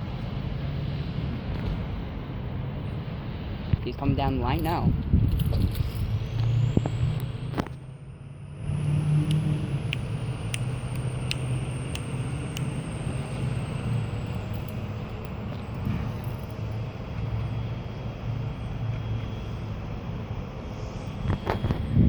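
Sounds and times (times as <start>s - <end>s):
train rumbling and whining: 0.0s - 22.0s
sharp clicks: 9.2s - 12.8s.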